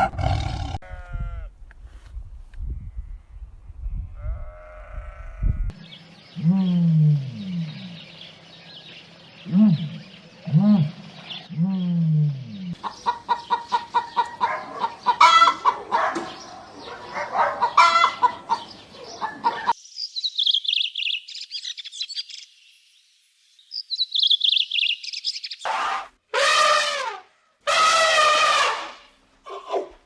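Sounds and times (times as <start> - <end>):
quick clucking bird calls: 12.7 - 19.8
high rapid bird chirping: 16.4 - 22.5, 23.6 - 25.7.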